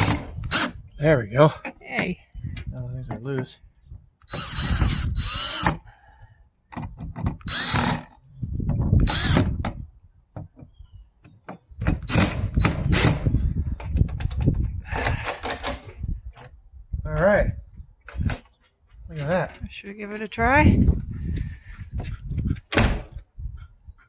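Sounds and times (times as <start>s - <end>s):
cordless drill driving screws: 4.3s - 5.8s, 7.4s - 8.2s, 9.0s - 9.5s.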